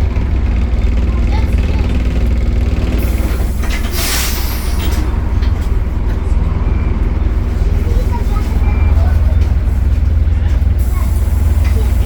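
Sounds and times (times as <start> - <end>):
bus engine droning: 0.0 - 12.0
compressed air hiss: 3.9 - 4.8.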